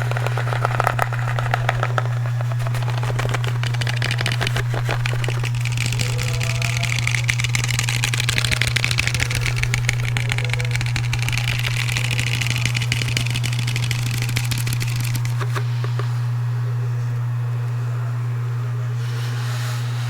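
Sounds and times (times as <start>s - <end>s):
scratching and tapping on object: 0.0s - 16.1s
steady low hum: 0.0s - 20.0s.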